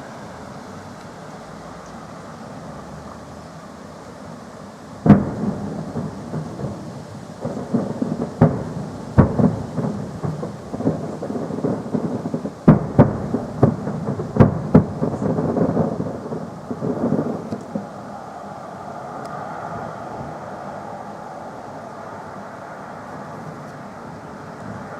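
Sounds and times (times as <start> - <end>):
fireworks booming: 5.0 - 20.5.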